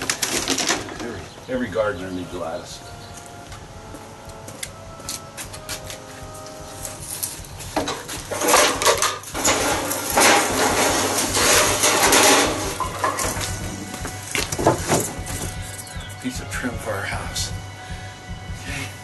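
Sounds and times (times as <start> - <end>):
junk clattering and scraping: 0.0 - 1.5, 5.5 - 16.7.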